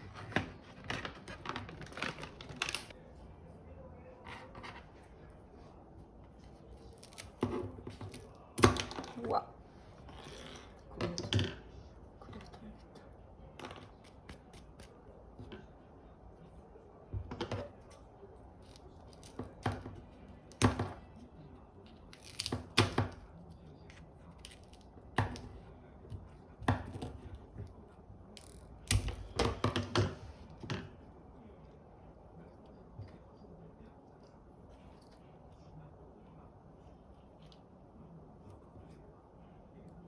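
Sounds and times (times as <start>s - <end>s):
treat ball knocking and clattering: 28.4s - 31.0s.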